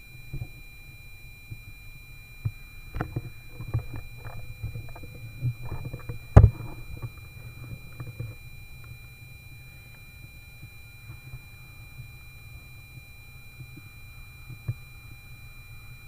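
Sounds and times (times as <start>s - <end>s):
wind rumbling on microphone: 2.8s - 8.6s.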